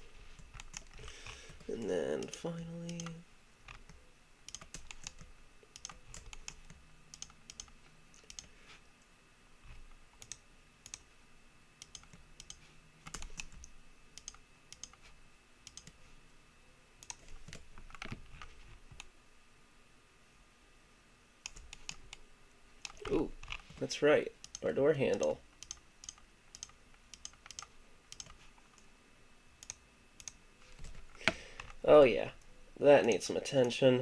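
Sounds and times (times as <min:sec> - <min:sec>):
faint steady hum: 0:00.0 - 0:34.0
computer keyboard and mouse clicking: 0:00.4 - 0:08.5, 0:10.2 - 0:11.1, 0:11.8 - 0:15.0, 0:15.7 - 0:16.0, 0:17.0 - 0:19.1, 0:21.4 - 0:22.2, 0:22.8 - 0:23.8, 0:24.4 - 0:28.9, 0:29.6 - 0:31.8.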